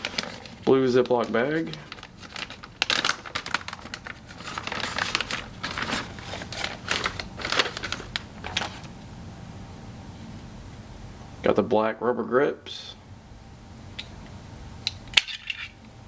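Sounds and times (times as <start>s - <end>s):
plastic bag crinkling: 0.0s - 8.9s.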